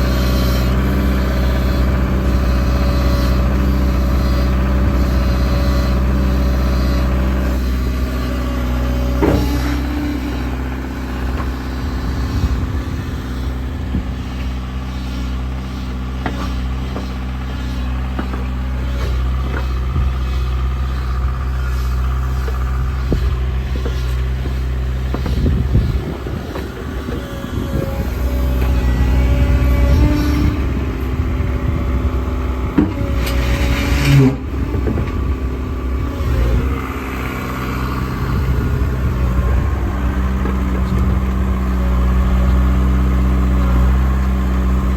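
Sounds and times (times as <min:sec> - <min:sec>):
engine knocks: 0:00.0 - 0:44.9
excavator diesel engine running: 0:00.0 - 0:44.9.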